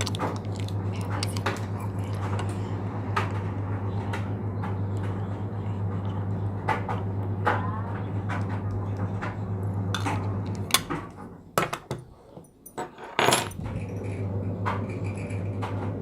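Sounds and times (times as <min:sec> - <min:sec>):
hard objects clicking and clinking: 0:00.0 - 0:02.6
steady low hum: 0:00.0 - 0:12.6, 0:13.4 - 0:16.0.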